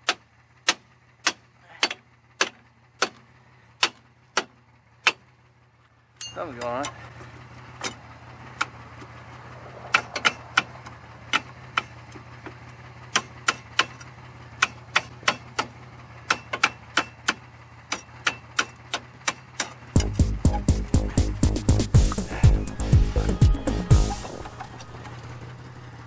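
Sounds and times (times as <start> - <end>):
car engine idling: 0.0 - 26.0
music: 20.0 - 25.8.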